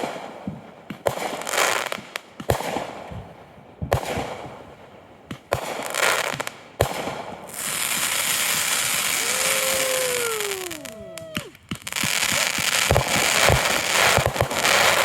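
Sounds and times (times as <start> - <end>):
firework bangs: 0.0 - 15.0
falling firework whistles: 7.5 - 15.0.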